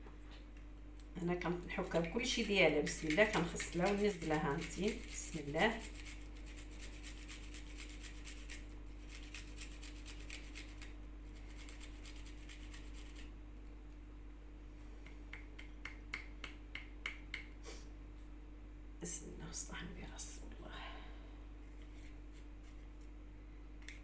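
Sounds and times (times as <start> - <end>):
food scraping on hand grater: 1.7 - 13.2.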